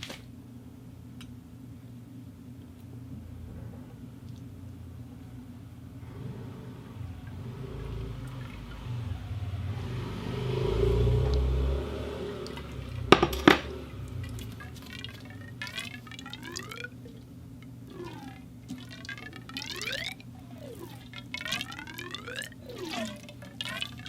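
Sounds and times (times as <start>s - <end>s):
hollow ringing gurgles: 6.0s - 24.0s
water rushing through a pipe: 6.0s - 24.0s.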